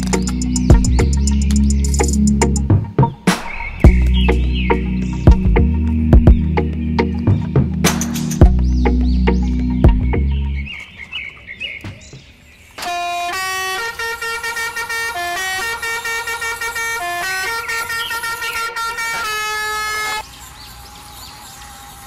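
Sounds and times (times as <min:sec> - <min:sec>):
loud low rumble: 0:03.7 - 0:10.5.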